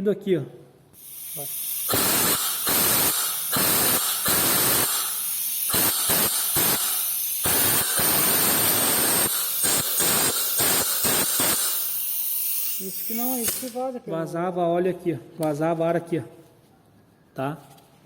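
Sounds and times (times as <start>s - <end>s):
compressed air hissing: 1.0s - 13.9s.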